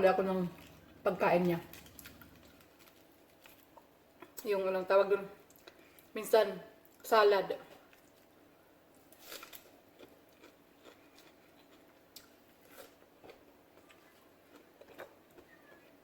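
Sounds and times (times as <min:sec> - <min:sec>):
chewing and crunching food: 0:00.4 - 0:04.5, 0:05.4 - 0:06.1, 0:07.7 - 0:08.4, 0:09.0 - 0:16.0.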